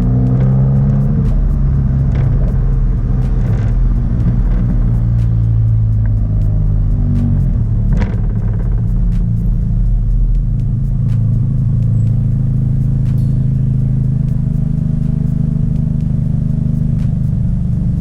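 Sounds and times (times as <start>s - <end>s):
car engine and exhaust droning: 0.0s - 18.0s.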